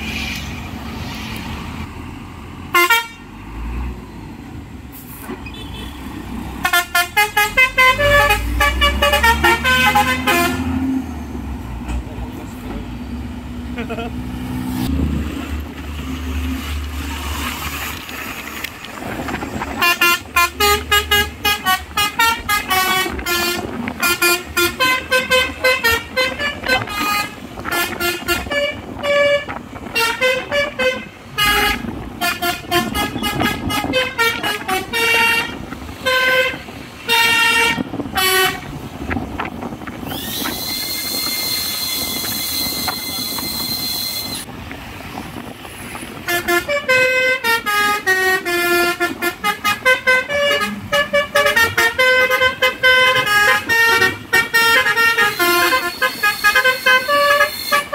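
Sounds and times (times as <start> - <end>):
truck engine and road noise: 0.0 - 57.9
long steady horn tone: 2.7 - 3.3, 6.6 - 11.0, 19.2 - 38.8, 46.2 - 57.9
musical horn playing tune: 2.7 - 3.3, 6.6 - 10.9, 19.7 - 38.7, 46.2 - 57.9.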